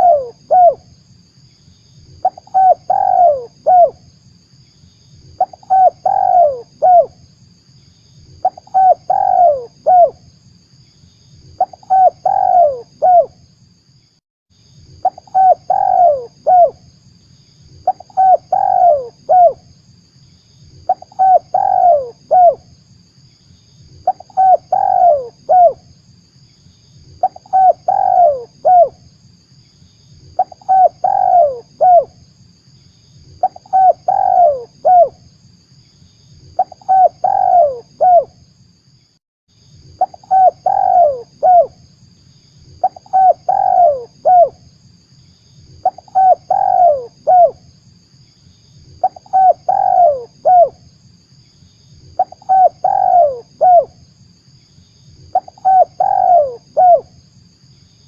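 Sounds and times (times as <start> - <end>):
dove cooing: 0.0 - 0.8, 2.2 - 4.0, 5.4 - 7.2, 8.4 - 10.2, 11.6 - 13.4, 15.0 - 16.8, 17.8 - 19.6, 20.9 - 22.6, 24.0 - 25.8, 27.2 - 29.0, 30.4 - 32.1, 33.4 - 35.2, 36.6 - 38.3, 40.0 - 41.8, 42.8 - 44.6, 45.8 - 47.6, 49.0 - 50.8, 52.2 - 54.0, 55.3 - 57.1.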